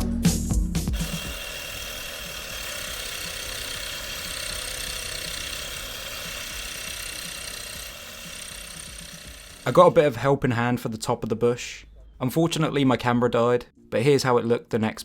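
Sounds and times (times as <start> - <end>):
hedge trimmer running: 0.9 - 10.0.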